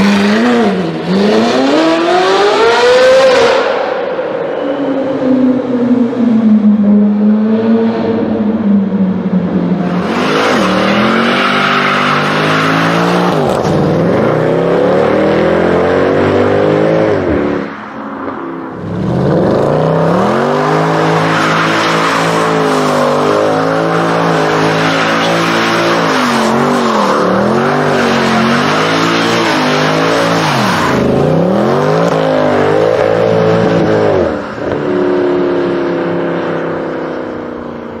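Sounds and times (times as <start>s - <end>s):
car engine revving through gears: 0.0s - 3.8s, 18.8s - 36.6s.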